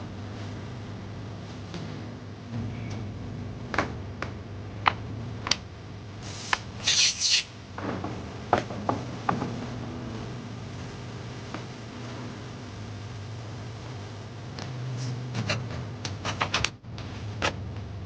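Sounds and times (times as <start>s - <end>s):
steady low hum: 0.0s - 18.0s
rubbing scraping bursts: 6.8s - 7.5s.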